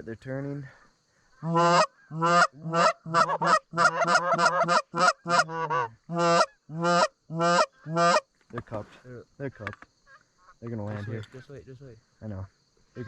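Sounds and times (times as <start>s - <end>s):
goose call honks: 1.4s - 8.2s
goose call short clucks: 1.4s - 8.2s.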